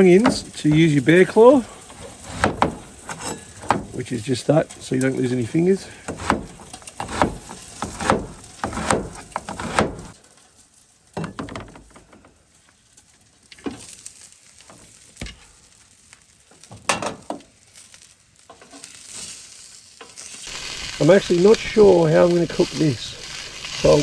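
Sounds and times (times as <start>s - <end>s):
cleaver chopping onion on board: 2.2s - 3.0s, 6.1s - 10.1s.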